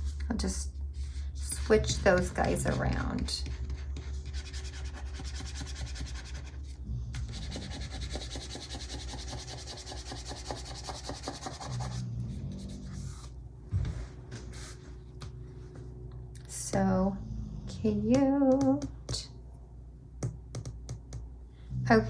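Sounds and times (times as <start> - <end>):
fingers rubbing stickers on paper: 1.1 - 12.0.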